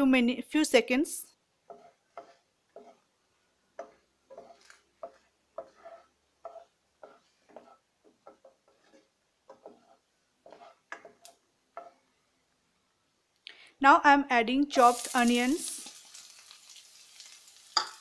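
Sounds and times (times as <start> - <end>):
spatula tapping and scraping a pan: 1.6 - 12.1, 17.8 - 18.0.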